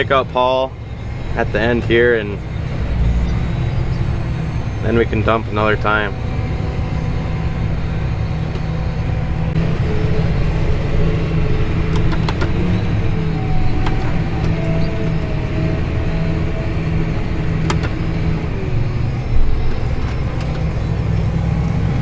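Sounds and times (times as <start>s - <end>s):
tractor engine droning: 0.0s - 22.0s.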